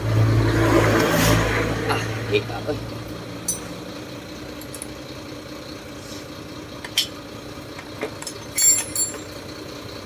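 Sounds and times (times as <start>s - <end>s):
metal tools clinking: 3.4s - 3.8s, 8.1s - 9.4s.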